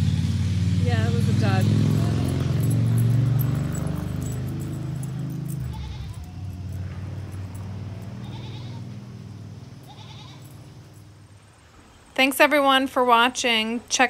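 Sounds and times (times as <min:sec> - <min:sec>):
goats bleating: 0:05.5 - 0:06.6, 0:08.2 - 0:09.0, 0:09.8 - 0:10.7.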